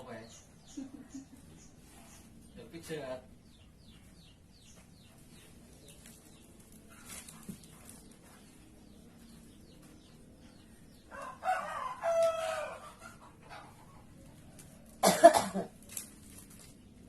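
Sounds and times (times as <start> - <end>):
rooster crowing: 11.1 - 13.1
short loud cough: 15.0 - 15.8.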